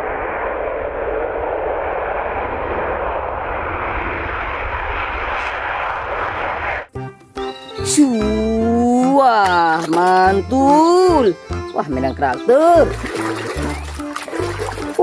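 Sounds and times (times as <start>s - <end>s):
jet engine rushing: 0.0s - 6.9s.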